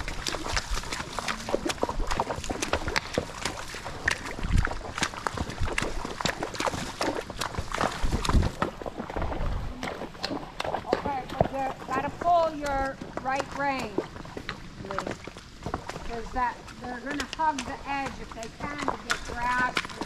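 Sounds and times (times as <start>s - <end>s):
horse hooves clicking: 0.0s - 20.0s.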